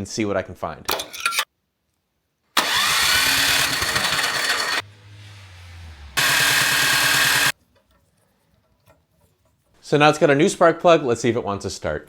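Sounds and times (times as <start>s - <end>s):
small engine cranking: 2.6s - 4.9s, 5.8s - 7.6s.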